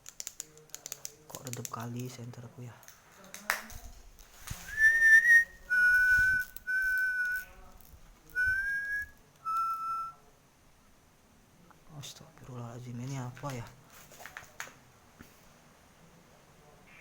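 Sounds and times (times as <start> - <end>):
whistled notes: 4.6 - 7.6, 8.3 - 10.2.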